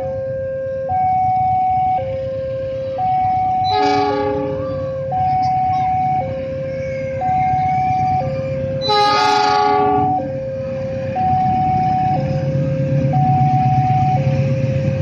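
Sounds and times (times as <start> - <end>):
two-tone crossing alarm: 0.0 - 14.6
train horn blast: 3.6 - 5.0, 8.8 - 10.4.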